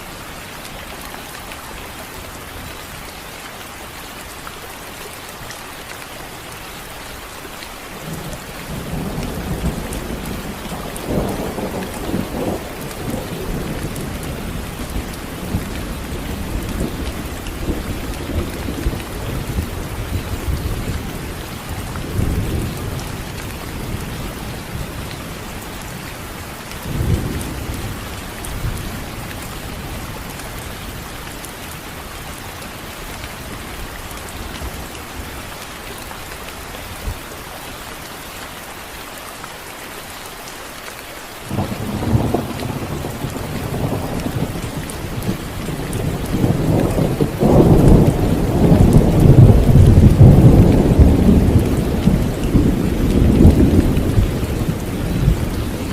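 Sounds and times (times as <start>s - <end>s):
steady rain: 0.0s - 55.9s
thunder rumbling: 8.1s - 25.5s, 41.5s - 55.9s.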